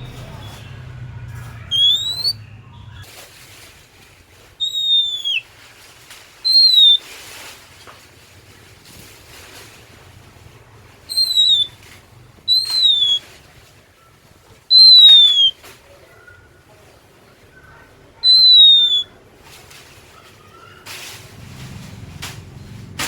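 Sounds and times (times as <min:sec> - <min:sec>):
bird singing whistled notes: 0:01.6 - 0:02.4, 0:04.6 - 0:05.4, 0:06.4 - 0:07.1, 0:11.1 - 0:11.8, 0:12.5 - 0:13.3, 0:14.7 - 0:15.6, 0:18.2 - 0:19.1
faint soft bird notes: 0:04.6 - 0:05.6, 0:11.0 - 0:13.4.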